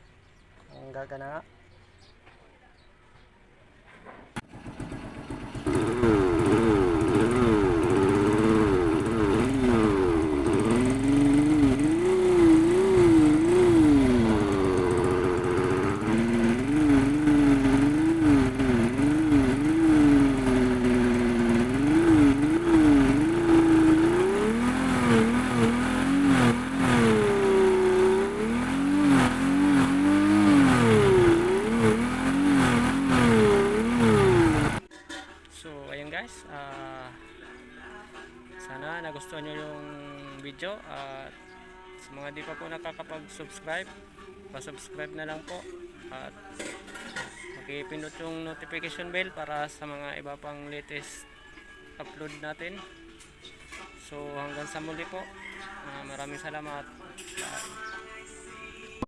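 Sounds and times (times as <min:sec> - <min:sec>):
electronic motorcycle engine effect: 0:04.4 - 0:34.8.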